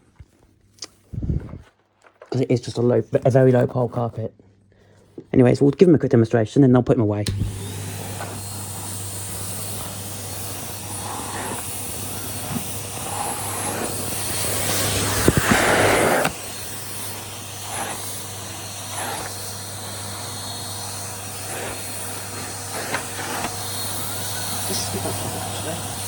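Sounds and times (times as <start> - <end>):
vacuum cleaner motor hum: 7.2 - 26.0.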